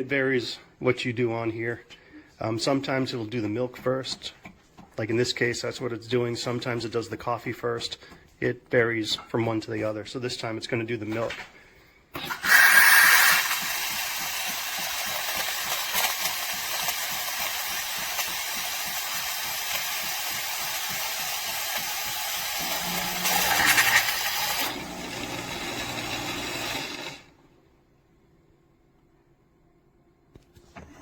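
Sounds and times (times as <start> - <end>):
espresso machine steam hiss: 12.2 - 24.6.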